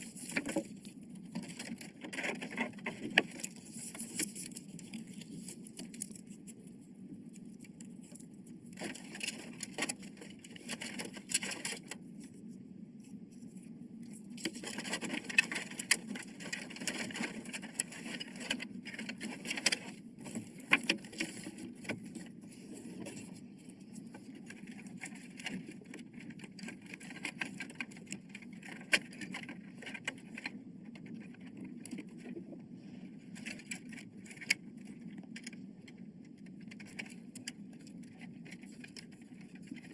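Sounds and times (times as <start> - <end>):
computer parts clicking and scraping: 0.0 - 12.1, 14.2 - 23.4
steady low hum: 0.0 - 39.9.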